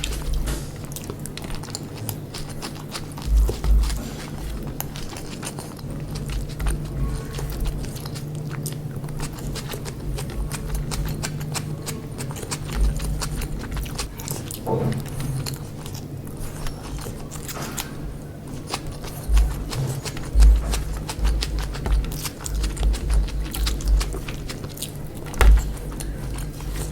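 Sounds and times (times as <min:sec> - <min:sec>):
chewing and biting food: 0:00.0 - 0:26.9
low uneven thumps: 0:03.2 - 0:05.0, 0:19.3 - 0:24.5, 0:25.3 - 0:26.9.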